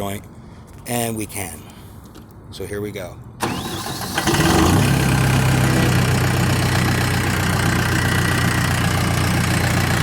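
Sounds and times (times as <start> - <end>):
concrete saw engine humming: 4.3 - 10.0.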